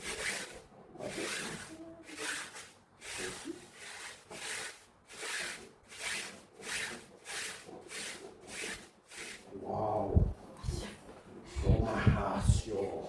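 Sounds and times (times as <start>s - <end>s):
hand scrubbing a surface: 0.0s - 10.9s, 11.5s - 12.8s
low voice: 9.6s - 10.9s, 11.5s - 13.0s.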